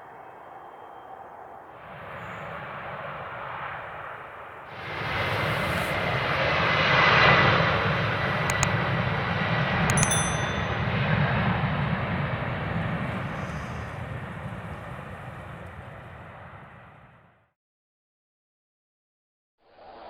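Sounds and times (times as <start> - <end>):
jet airliner taking off: 0.0 - 9.9, 10.6 - 17.4
short metallic clinks: 9.9 - 10.8.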